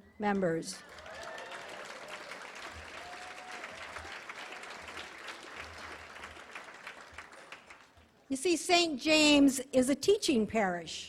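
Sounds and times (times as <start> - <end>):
audience applauding: 0.8 - 8.1.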